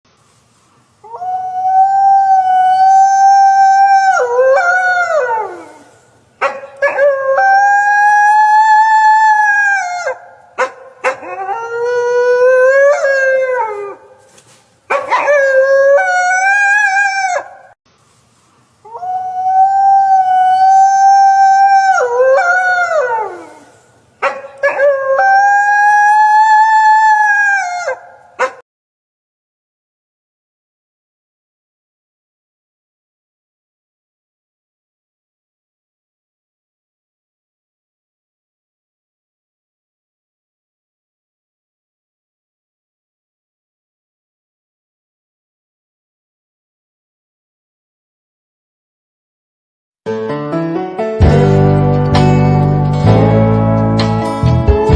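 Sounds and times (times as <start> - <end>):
wolf howling: 1.0 - 14.1, 14.9 - 17.7, 18.9 - 28.6, 54.6 - 54.9.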